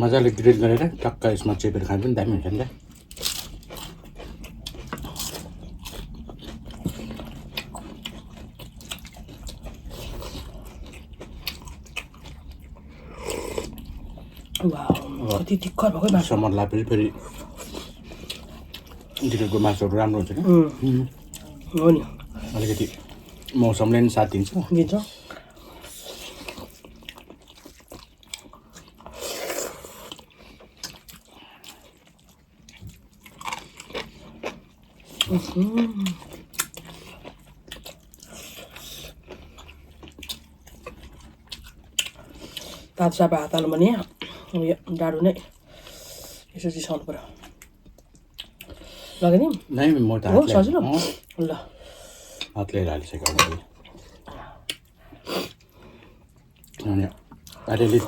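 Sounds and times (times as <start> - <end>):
mouth chewing and biting meat: 2.7 - 16.2
chewing mouth sounds: 2.7 - 16.3, 25.2 - 44.3.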